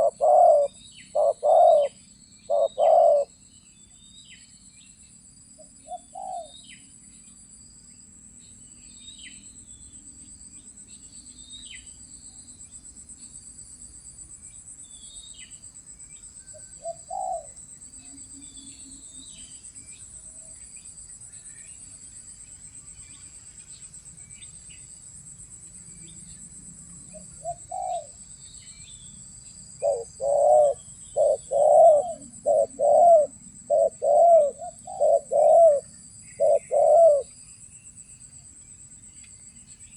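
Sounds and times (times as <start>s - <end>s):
doves cooing: 0.0s - 3.3s, 16.7s - 17.6s, 27.2s - 28.2s, 29.8s - 37.3s
small birds chirping: 0.0s - 10.0s, 27.1s - 39.9s
high insect drone: 0.0s - 39.9s.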